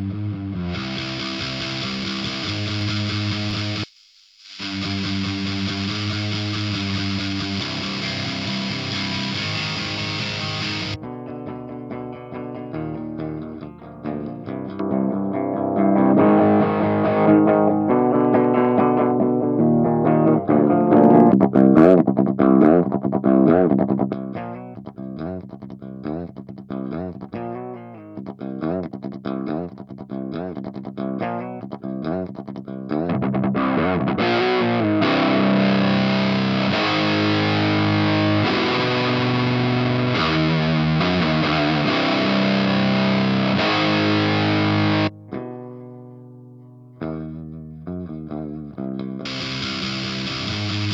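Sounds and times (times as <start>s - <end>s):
distorted electric guitar: 0.0s - 50.9s.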